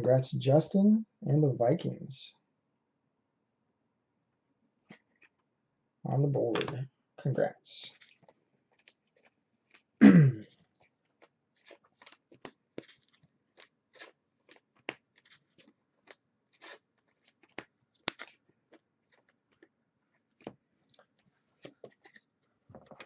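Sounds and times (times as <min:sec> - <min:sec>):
foil wrappers crinkling: 0:10.5 - 0:19.7.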